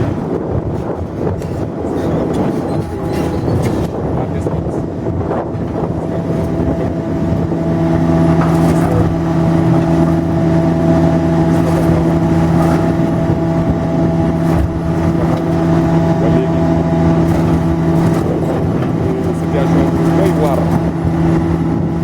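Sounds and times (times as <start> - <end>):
heavy machine engine running: 0.0 - 22.0.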